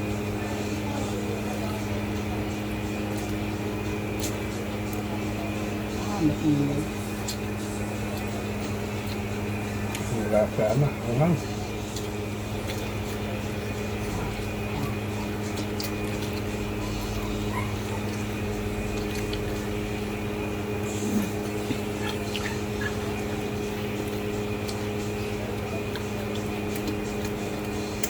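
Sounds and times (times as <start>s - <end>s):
fan humming: 0.0s - 28.0s
person chewing: 4.1s - 5.1s, 7.0s - 28.0s.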